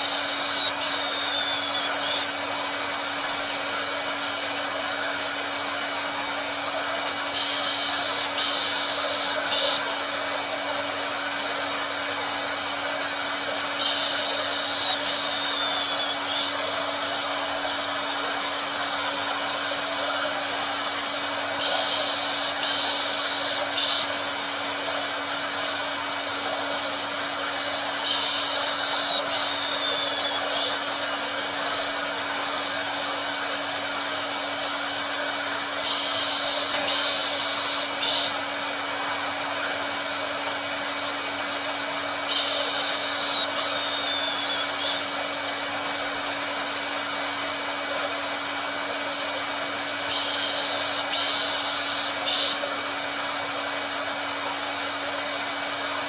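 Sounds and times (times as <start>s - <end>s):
higher hiss: 0.0s - 47.0s, 49.9s - 54.2s
hair dryer running: 0.0s - 56.0s.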